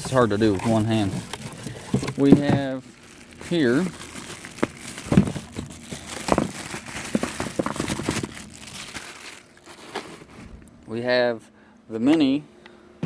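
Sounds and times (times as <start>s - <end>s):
plastic packaging crinkling: 0.0s - 10.8s.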